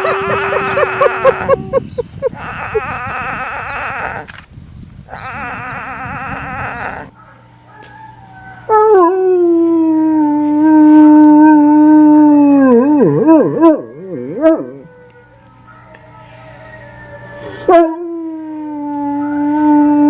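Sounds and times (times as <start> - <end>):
trembling animal call: 5.1 - 7.1
dog howling: 5.1 - 20.0.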